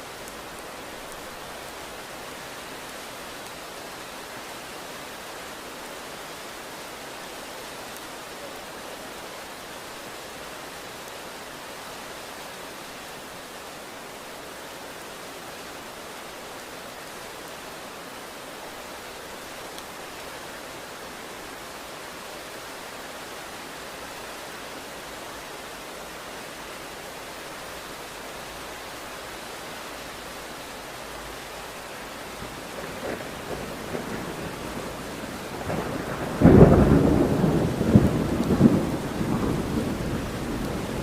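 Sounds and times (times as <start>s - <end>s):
steady rain: 0.0s - 41.0s
rolling thunder: 32.4s - 41.0s.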